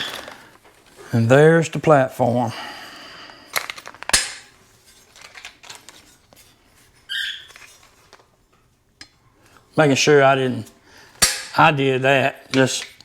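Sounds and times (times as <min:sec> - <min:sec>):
high squeak: 0:07.1 - 0:07.6.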